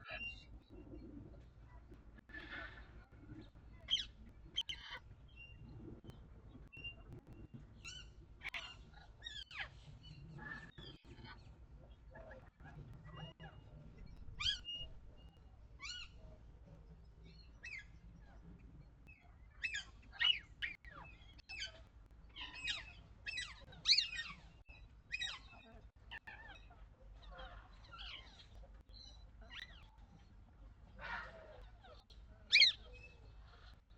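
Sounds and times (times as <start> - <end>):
wind rumble on microphone: 0.4 - 9.0
birds calling: 2.2 - 16.5, 19.1 - 33.9.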